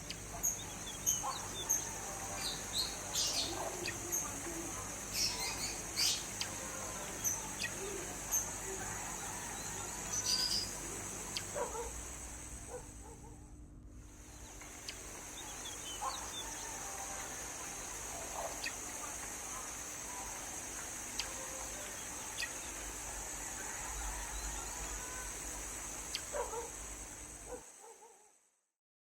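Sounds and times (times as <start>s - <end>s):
birds chirping and calling: 0.0s - 11.9s, 14.3s - 25.2s, 26.0s - 26.6s
high insect drone: 0.0s - 13.4s, 14.0s - 28.4s.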